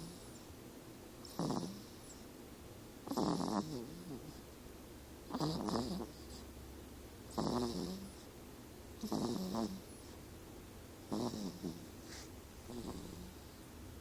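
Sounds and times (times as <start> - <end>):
pitched snores: 0.0 - 0.3, 1.2 - 2.2, 3.0 - 4.4, 5.3 - 6.5, 7.3 - 8.3, 9.0 - 10.1, 11.1 - 13.5.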